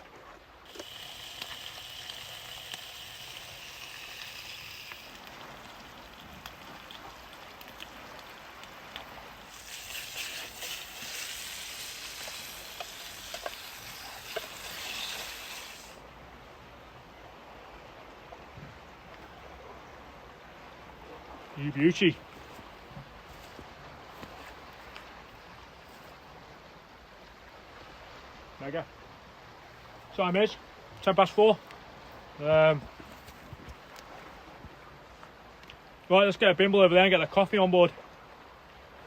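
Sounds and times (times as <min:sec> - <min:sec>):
bacon sizzling in a pan: 0:00.7 - 0:08.6, 0:09.4 - 0:16.0.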